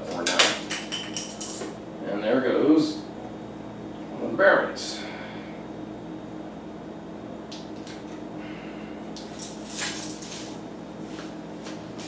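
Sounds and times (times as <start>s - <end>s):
steady low hum: 0.0s - 12.0s
light scrapes and small clinks: 9.2s - 10.6s.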